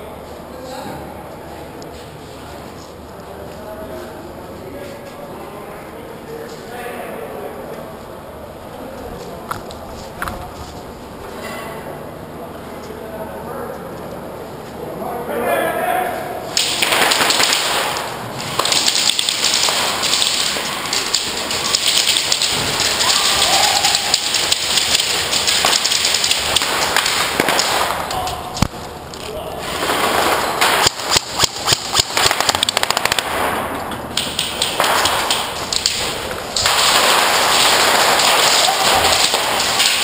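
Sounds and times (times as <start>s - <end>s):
airsoft guns firing: 16.5s - 28.7s, 29.6s - 40.0s
pellets pattering against surfaces: 16.6s - 40.0s.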